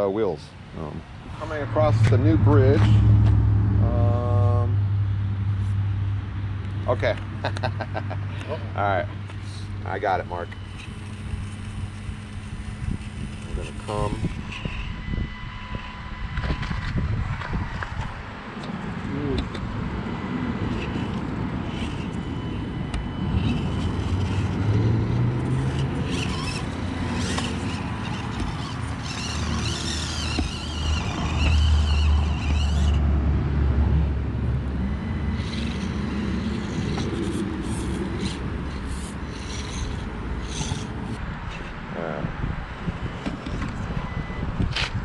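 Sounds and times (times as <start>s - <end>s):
low rumble: 1.0s - 6.4s
small electric motors whining: 6.9s - 45.0s.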